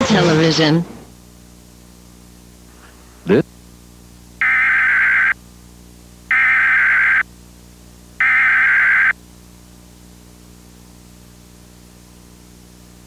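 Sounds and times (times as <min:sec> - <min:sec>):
harsh data warble bursts: 0:04.4 - 0:05.4, 0:06.3 - 0:07.2, 0:08.2 - 0:09.1
tape hiss: 0:04.4 - 0:05.4, 0:06.2 - 0:07.3, 0:08.2 - 0:09.2.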